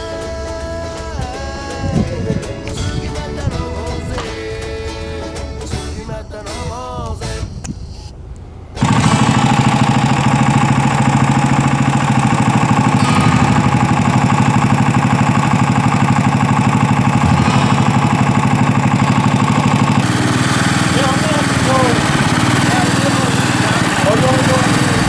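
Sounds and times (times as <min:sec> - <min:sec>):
engine running with pulsing beat: 0:08.5 - 0:25.0.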